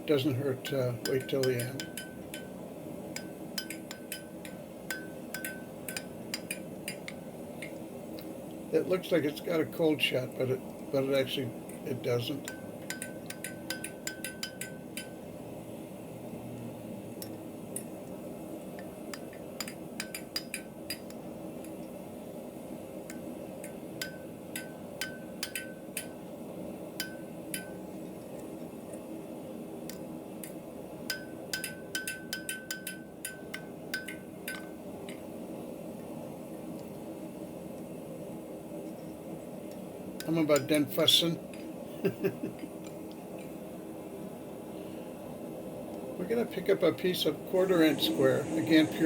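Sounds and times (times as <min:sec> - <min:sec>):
steady hum: 0:00.0 - 0:49.0
hammer striking iron on anvil: 0:01.0 - 0:02.6, 0:03.2 - 0:07.1, 0:12.4 - 0:15.2, 0:19.1 - 0:21.1, 0:24.0 - 0:26.2, 0:27.0 - 0:27.8, 0:31.1 - 0:34.7.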